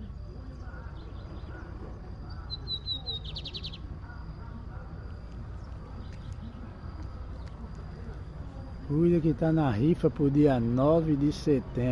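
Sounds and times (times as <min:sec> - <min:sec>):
bird singing with trill: 0:00.4 - 0:04.3.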